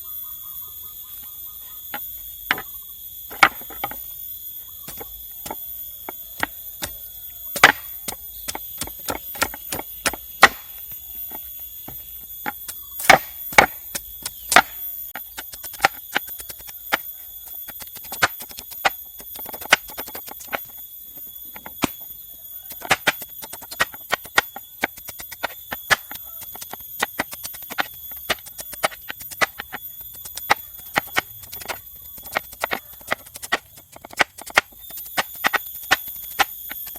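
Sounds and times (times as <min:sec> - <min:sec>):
high-pitched insect drone: 0:00.0 - 0:36.9
bamboo chopping knocks: 0:06.4 - 0:10.8, 0:13.0 - 0:14.8.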